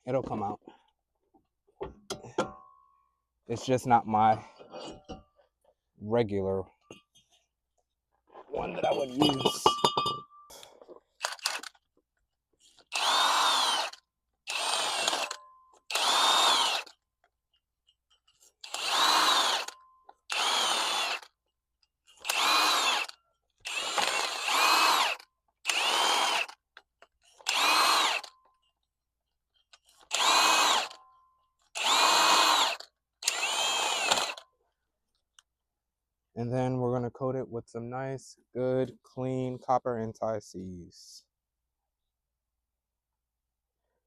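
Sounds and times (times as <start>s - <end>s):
power drill bursts: 12.8s - 17.0s, 18.6s - 21.3s, 22.2s - 26.6s, 27.4s - 28.3s, 30.0s - 31.0s, 31.7s - 34.4s.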